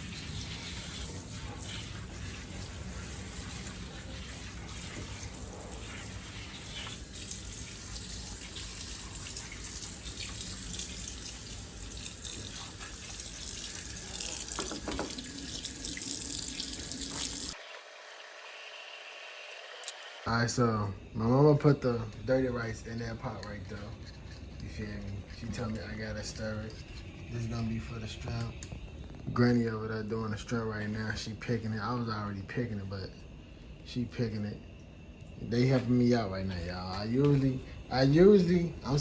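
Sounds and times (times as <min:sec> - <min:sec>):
tap running into sink: 0:12.2 - 0:16.4.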